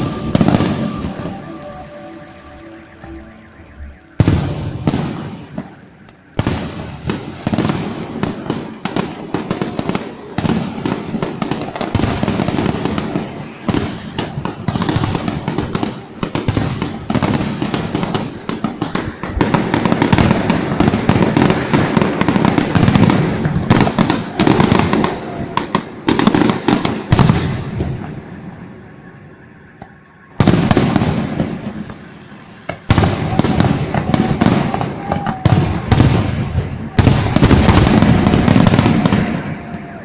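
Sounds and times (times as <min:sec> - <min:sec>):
fireworks bangs and crackling: 0:00.0 - 0:40.0.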